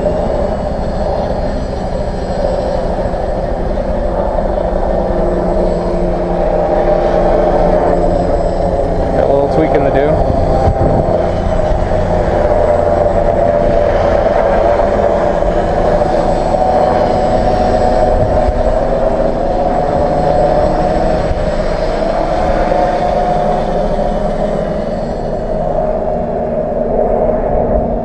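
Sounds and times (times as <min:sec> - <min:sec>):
low rumble: 0:00.0 - 0:28.0
motors buzzing whine: 0:00.0 - 0:28.0.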